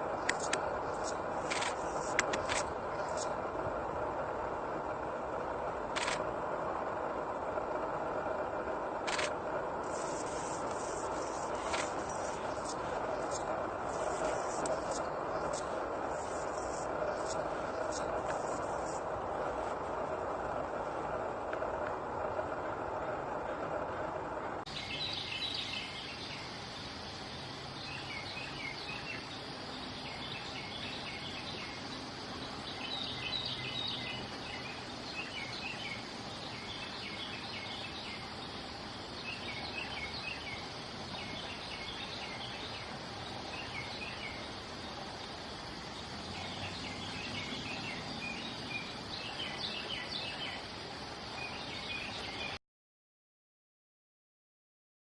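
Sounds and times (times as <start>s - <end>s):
small birds chirping: 0.0s - 3.6s, 9.0s - 19.8s, 24.7s - 52.6s
background hiss: 0.0s - 52.6s.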